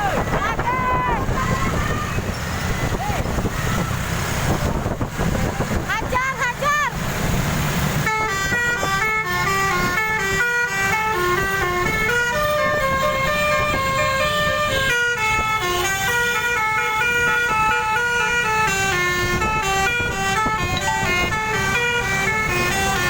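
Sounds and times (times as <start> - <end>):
musical air horn tune: 12.6 - 23.0.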